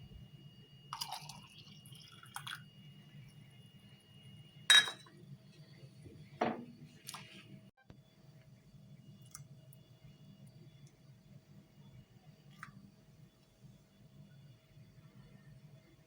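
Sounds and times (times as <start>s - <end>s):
glass clinking: 4.7s - 5.1s.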